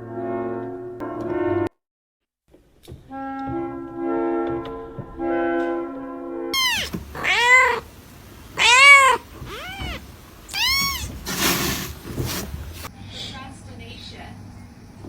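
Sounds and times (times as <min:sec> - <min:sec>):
music: 0:00.0 - 0:01.8, 0:02.5 - 0:06.5
cat meowing: 0:06.6 - 0:11.6.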